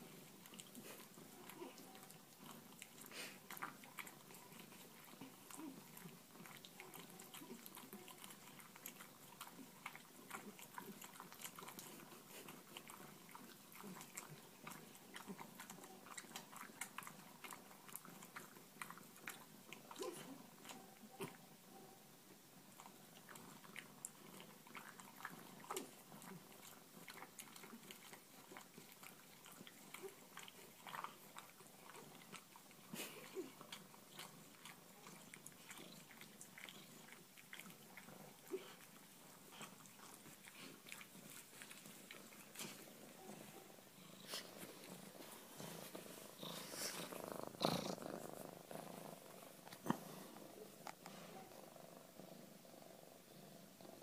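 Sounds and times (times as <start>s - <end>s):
pet chewing: 0.0s - 21.4s, 22.8s - 51.6s.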